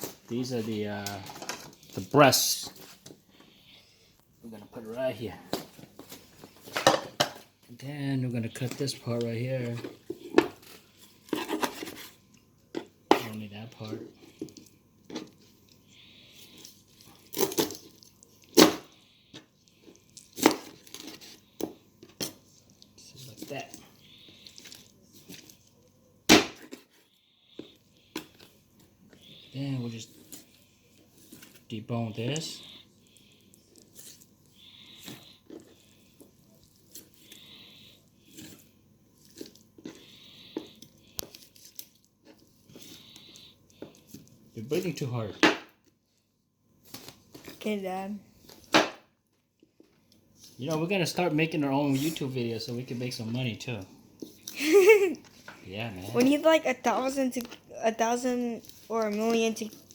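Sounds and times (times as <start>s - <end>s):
soft breathing: 3.0s - 4.4s
knife crunching through bone: 17.1s - 18.9s.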